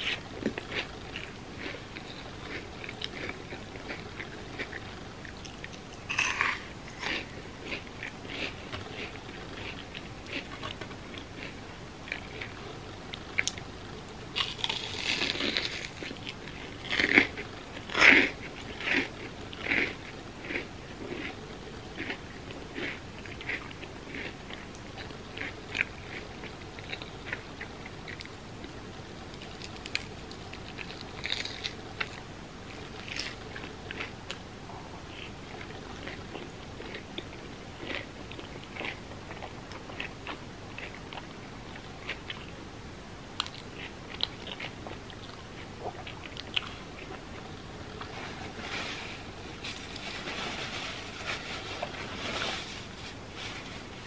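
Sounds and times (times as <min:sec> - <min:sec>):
crunchy chewing: 0:00.0 - 0:42.6, 0:43.4 - 0:52.6
crunchy bite: 0:05.4 - 0:10.8, 0:14.4 - 0:19.9.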